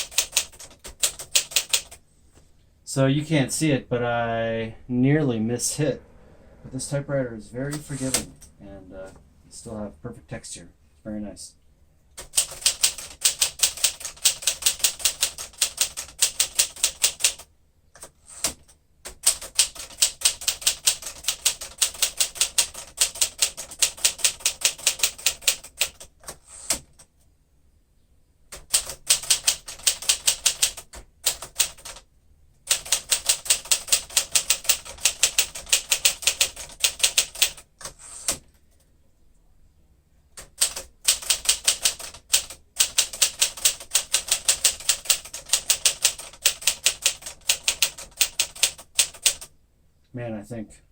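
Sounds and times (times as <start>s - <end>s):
manual typewriter key clacks: 0.0s - 2.0s, 12.2s - 17.4s, 28.5s - 32.0s, 32.7s - 37.6s, 40.4s - 49.5s.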